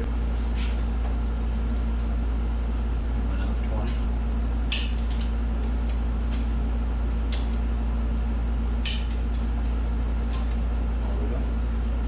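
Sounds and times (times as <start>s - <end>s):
low hum: 0.0s - 12.0s.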